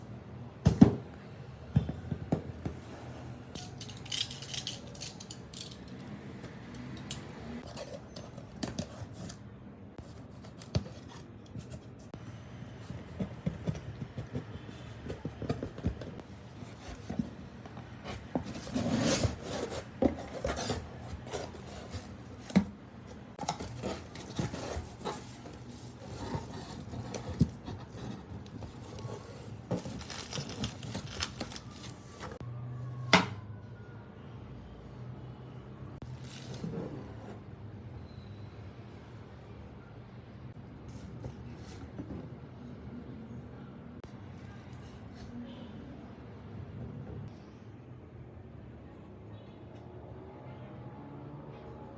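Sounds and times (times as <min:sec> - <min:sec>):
packaging rustling: 0:18.1 - 0:22.7, 0:23.4 - 0:32.4.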